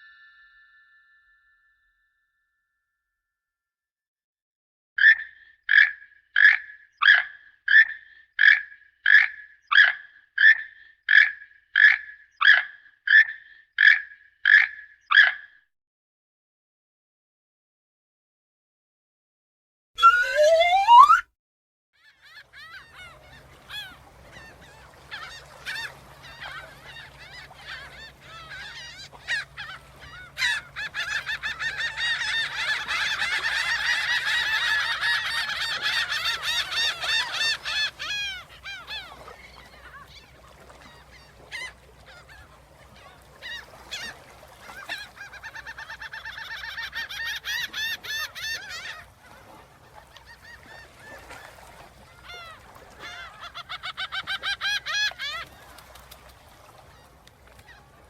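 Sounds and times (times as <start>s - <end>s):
geese honking: 20.0s - 21.2s, 22.6s - 55.6s.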